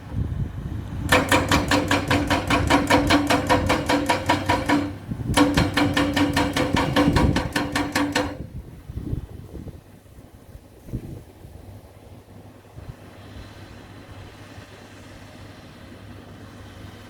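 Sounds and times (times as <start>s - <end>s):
excavator engine running: 0.0s - 8.6s
wind: 0.0s - 17.0s
hydraulic rock breaker hammering: 1.1s - 8.6s.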